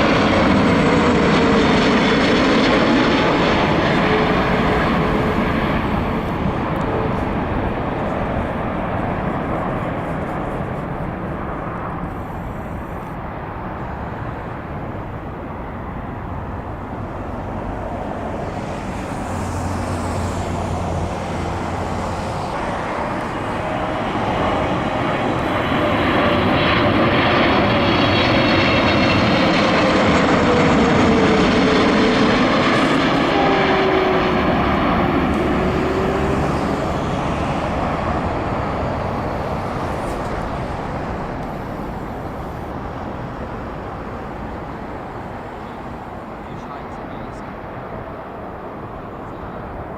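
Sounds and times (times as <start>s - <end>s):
jet airliner passing: 0.0s - 49.9s
jet engine whine sliding down: 0.0s - 49.9s.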